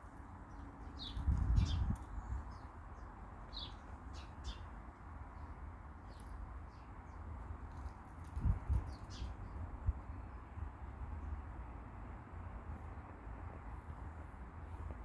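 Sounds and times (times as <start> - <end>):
small birds chirping: 0.5 - 4.8.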